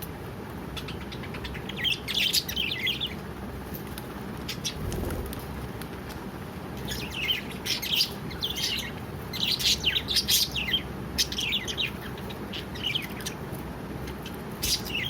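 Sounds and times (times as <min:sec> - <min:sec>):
low background rumble: 0:04.5 - 0:07.2.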